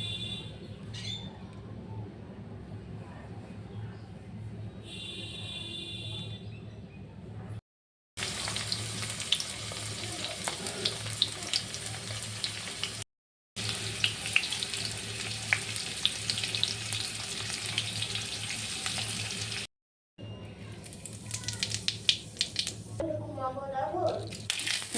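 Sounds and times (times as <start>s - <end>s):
food sizzling in hot oil: 8.2s - 13.0s, 13.6s - 19.7s, 20.8s - 22.8s, 24.3s - 24.9s
oil crackling and popping: 8.2s - 13.0s, 13.6s - 19.7s, 20.8s - 22.9s, 24.1s - 24.9s.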